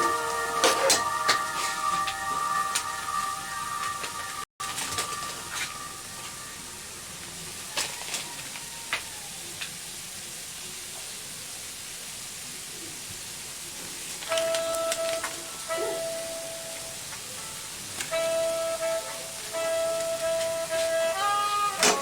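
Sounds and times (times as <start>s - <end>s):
sustained musical note: 0.0s - 7.1s, 14.3s - 22.0s
food sizzling in a pan: 0.0s - 22.0s.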